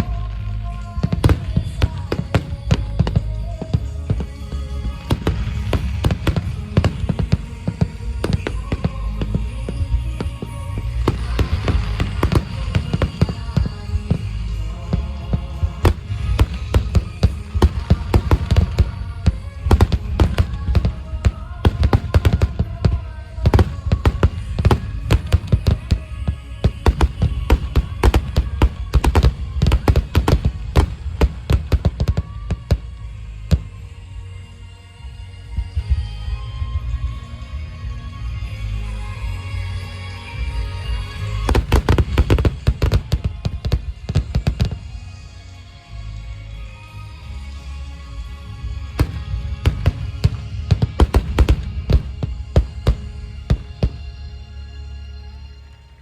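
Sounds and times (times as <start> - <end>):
firework bangs: 0.0 - 33.9, 40.9 - 45.3, 48.6 - 54.4
deep continuous rumble: 0.0 - 56.0
music playing: 0.0 - 56.0.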